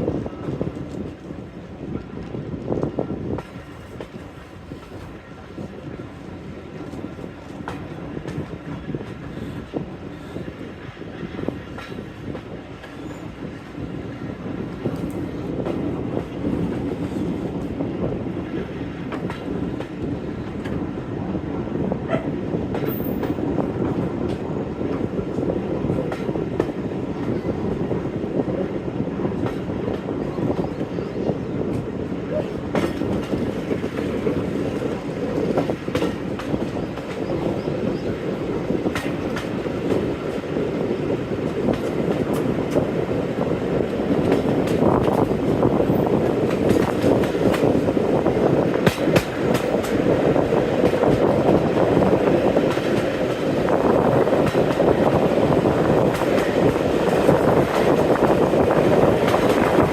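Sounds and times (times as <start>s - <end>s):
train rumbling: 0.0s - 59.9s
wheels clicking over rail joints: 43.7s - 59.9s.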